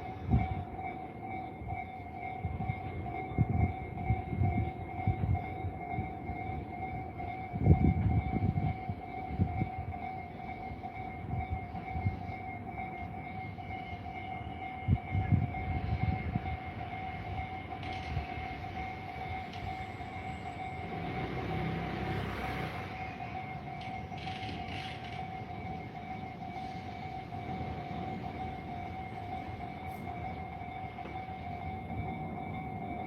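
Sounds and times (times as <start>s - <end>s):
level crossing two-tone alarm: 0.0s - 33.0s
train rumbling past: 0.0s - 33.0s.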